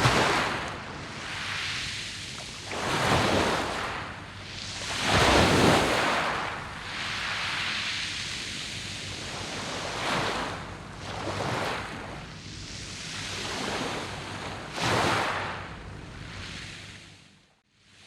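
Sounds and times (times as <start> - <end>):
waves breaking on pebble beach: 0.0 - 10.6, 11.2 - 12.0, 13.2 - 15.5.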